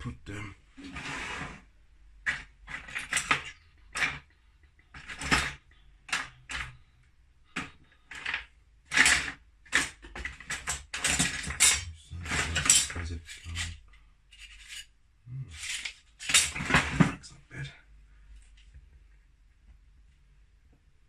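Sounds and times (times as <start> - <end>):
plastic parts clicking and clattering: 2.2 - 6.8, 7.5 - 14.9, 15.5 - 17.2.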